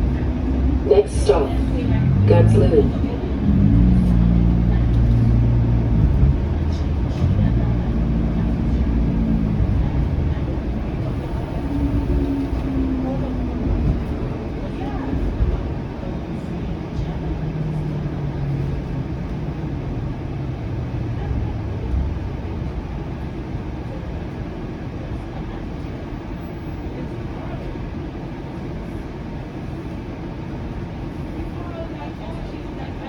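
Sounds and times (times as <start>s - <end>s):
low motor drone: 0.0s - 15.1s
streetcar wheels rumbling: 0.0s - 33.0s.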